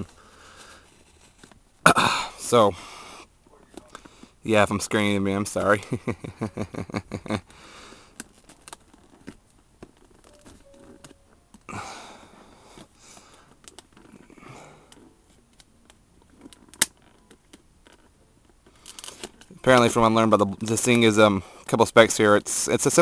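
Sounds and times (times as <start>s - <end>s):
plastic crackles and rustles: 0.0s - 1.8s, 7.4s - 11.7s, 12.3s - 21.1s.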